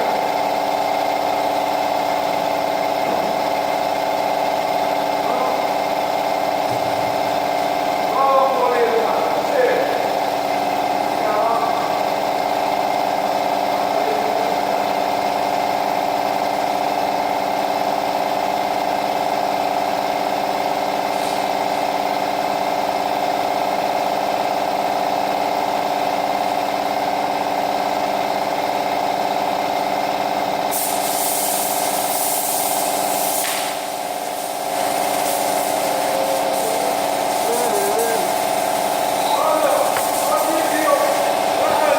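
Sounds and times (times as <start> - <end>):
loud airy hiss: 21.1 - 21.7, 30.7 - 41.9
power tool motor humming: 32.7 - 41.9.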